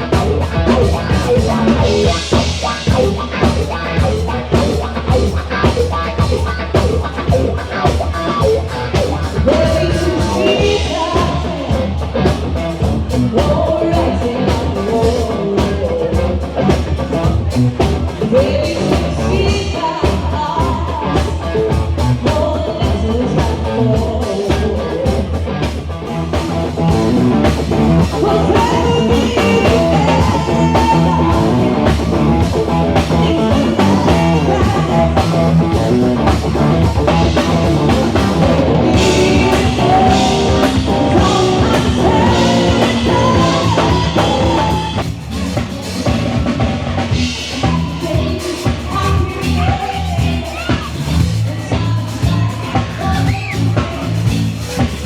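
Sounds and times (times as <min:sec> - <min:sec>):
live rock band playing: 0:00.0 - 0:55.0
person singing: 0:09.0 - 0:12.0, 0:26.4 - 0:45.0.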